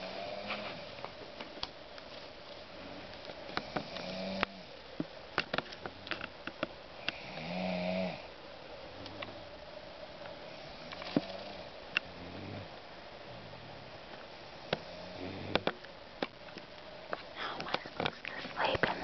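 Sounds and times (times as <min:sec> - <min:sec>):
slow snoring: 0:00.0 - 0:01.0, 0:02.8 - 0:04.7, 0:07.0 - 0:08.3, 0:10.4 - 0:12.8, 0:14.6 - 0:15.8.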